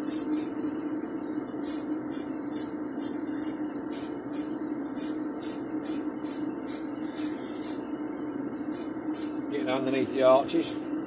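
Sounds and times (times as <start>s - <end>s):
spray paint hissing: 0.0s - 0.5s, 1.6s - 7.8s, 8.7s - 9.4s
low hum: 0.0s - 10.1s.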